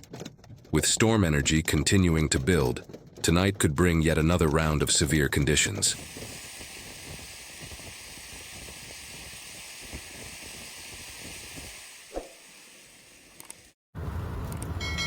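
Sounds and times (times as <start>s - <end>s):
steady hiss: 5.9s - 13.8s.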